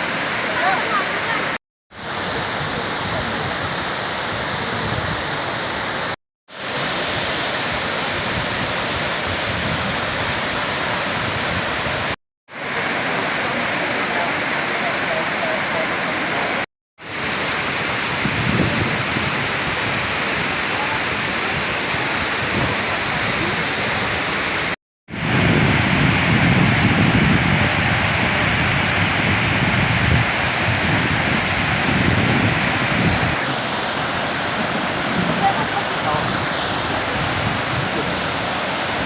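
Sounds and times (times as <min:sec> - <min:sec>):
waterfall rushing roar: 0:00.0 - 0:39.0.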